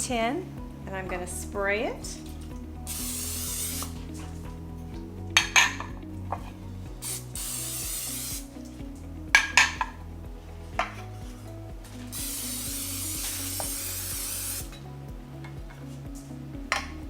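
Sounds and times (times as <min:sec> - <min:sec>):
cooking spray hissing: 0:02.9 - 0:04.1, 0:07.0 - 0:08.6, 0:12.1 - 0:14.8.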